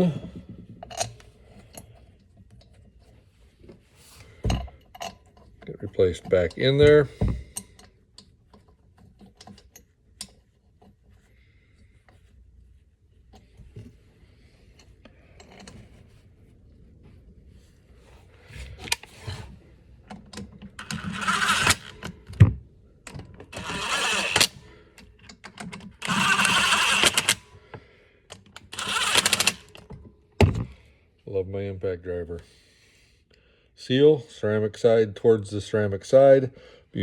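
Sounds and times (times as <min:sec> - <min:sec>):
impact driver hammering bolts: 0:23.5 - 0:24.6, 0:26.0 - 0:27.4, 0:28.6 - 0:29.8.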